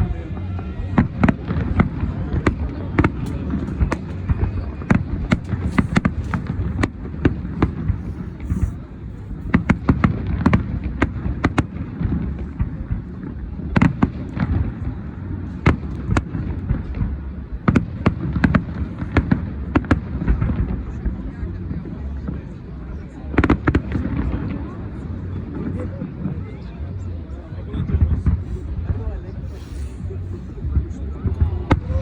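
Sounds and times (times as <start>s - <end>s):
fireworks bangs: 0.0s - 21.2s
low rumble: 0.0s - 32.0s.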